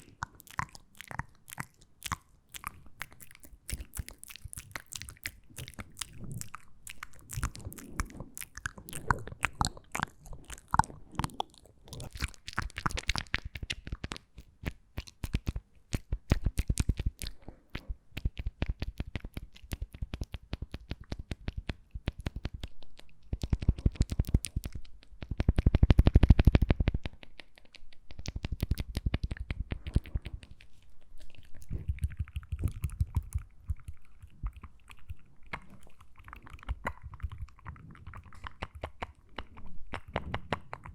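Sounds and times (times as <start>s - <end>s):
wet lip and tongue clicks: 0.0s - 40.9s.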